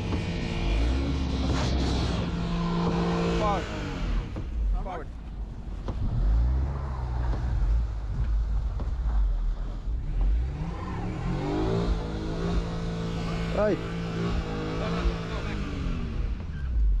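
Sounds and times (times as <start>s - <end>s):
van engine revving: 0.0s - 17.0s.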